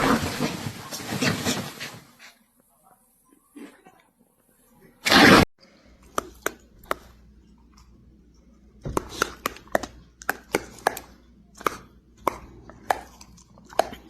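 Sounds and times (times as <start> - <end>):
dog chewing with crunching bites: 6.1 - 14.0.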